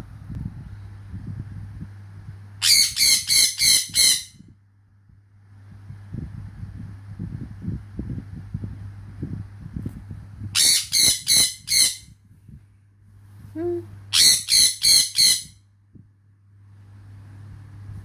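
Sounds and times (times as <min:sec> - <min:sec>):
parrot squawking harshly: 0:02.6 - 0:04.3, 0:10.6 - 0:12.0, 0:14.1 - 0:15.5.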